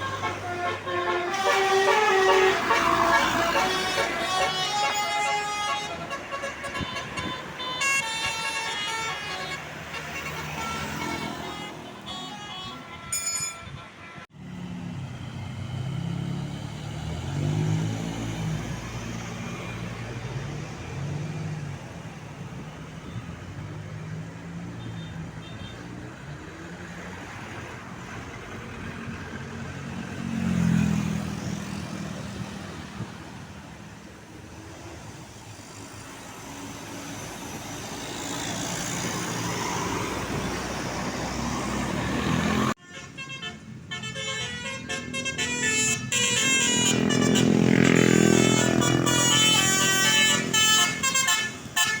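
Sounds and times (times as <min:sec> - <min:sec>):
patterned horn sound: 0:00.0 - 0:14.2, 0:42.8 - 0:52.0
vehicle horn toots: 0:00.0 - 0:14.3, 0:42.8 - 0:52.0
buses passing: 0:00.0 - 0:52.0
traffic noise: 0:00.0 - 0:52.0.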